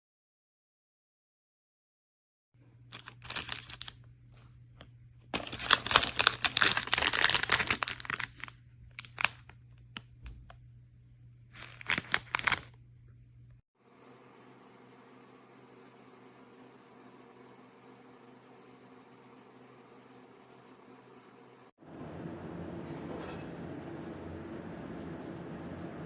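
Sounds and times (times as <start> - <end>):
steady low hum: 2.6 - 26.0
plastic packaging crinkling and tearing: 2.9 - 4.0, 5.4 - 10.5, 11.6 - 12.8.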